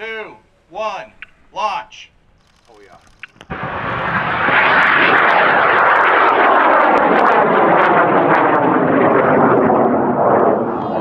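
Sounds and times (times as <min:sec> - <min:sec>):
rocket motors roaring and crackling: 0:02.4 - 0:11.0.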